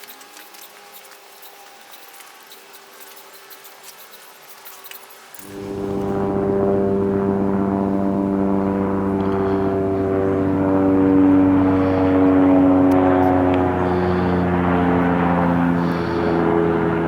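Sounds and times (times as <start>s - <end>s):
electric power tool running: 5.3s - 17.0s.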